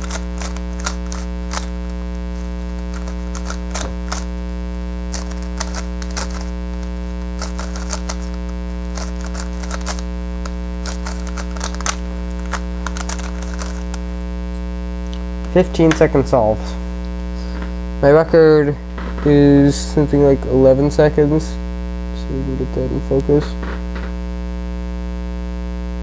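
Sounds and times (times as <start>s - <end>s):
plastic puzzle clicking: 0.0s - 4.4s, 5.1s - 14.1s
electrical mains hum: 0.0s - 26.0s.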